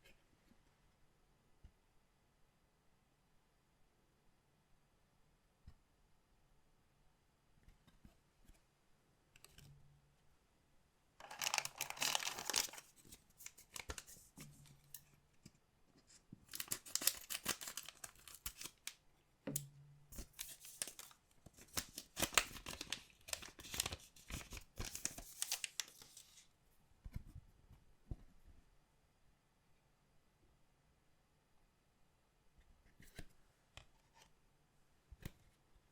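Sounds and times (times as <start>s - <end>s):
card pack wrappers tearing: 11.2s - 14.2s, 16.5s - 18.9s, 20.2s - 26.4s.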